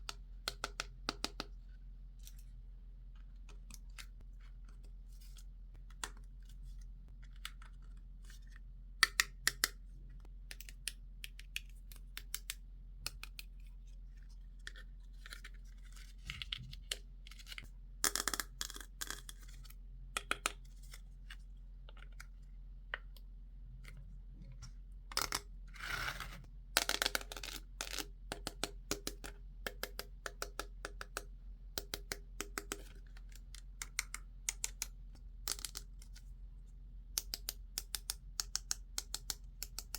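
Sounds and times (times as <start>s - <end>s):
plastic pieces clicking: 33.8s - 35.9s.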